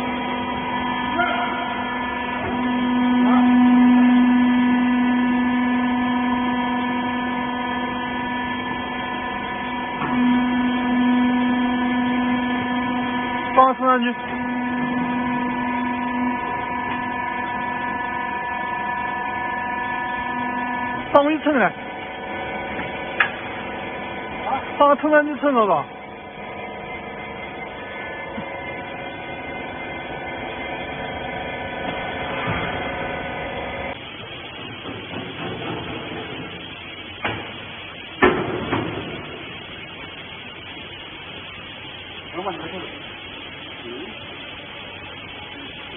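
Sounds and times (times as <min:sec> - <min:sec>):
hydraulic power unit humming: 0:00.0 - 0:45.9.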